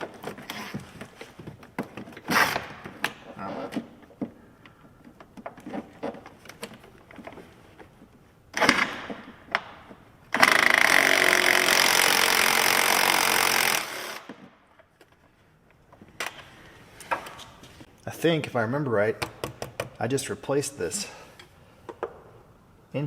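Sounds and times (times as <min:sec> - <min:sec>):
handheld power tool running: 0:10.4 - 0:14.3.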